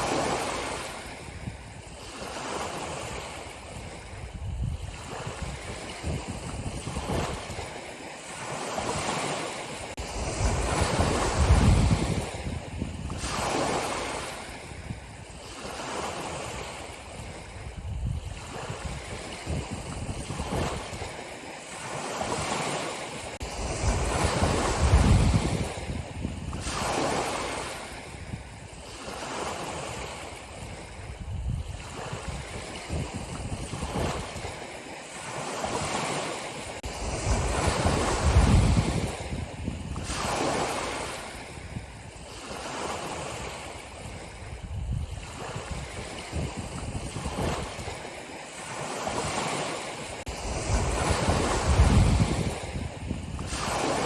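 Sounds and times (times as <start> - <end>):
ocean waves breaking: 0.0 - 54.0.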